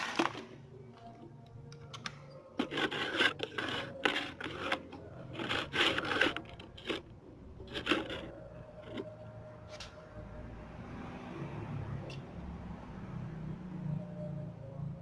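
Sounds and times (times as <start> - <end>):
rasping rubbing strokes: 2.6 - 7.1, 7.7 - 9.2.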